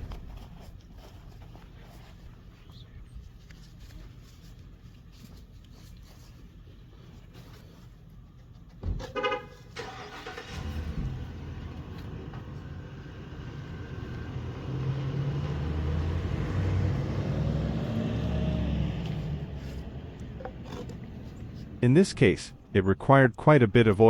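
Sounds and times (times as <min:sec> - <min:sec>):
vehicle engine rumble passing: 0:09.8 - 0:22.8.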